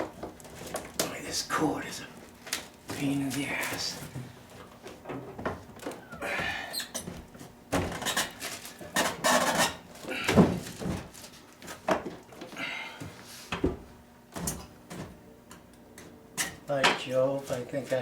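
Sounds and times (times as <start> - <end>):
microwave oven knocking and clunking: 4.2 - 11.1, 13.5 - 17.1.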